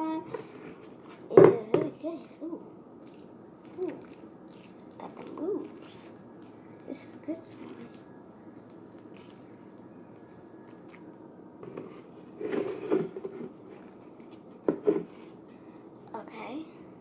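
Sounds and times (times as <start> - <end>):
slime squelching in hands: 3.0 - 11.2.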